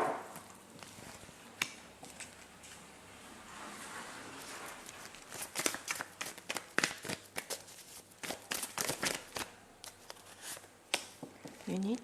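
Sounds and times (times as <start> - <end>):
cards being shuffled: 4.8 - 12.0.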